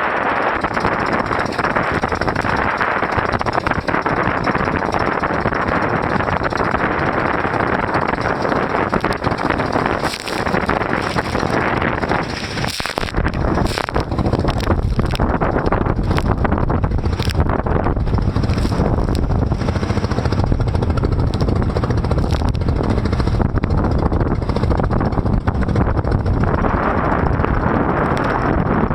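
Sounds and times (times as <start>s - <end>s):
boat engine running: 0.0s - 28.9s
wind noise on microphone: 0.0s - 28.9s
water spray splashing: 6.5s - 15.2s, 18.3s - 19.0s.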